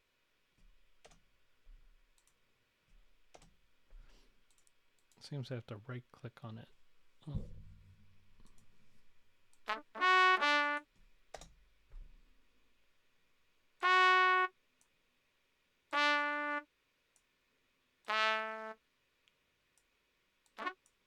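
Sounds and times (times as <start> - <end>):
brass-like synth notes: 9.6 - 10.9.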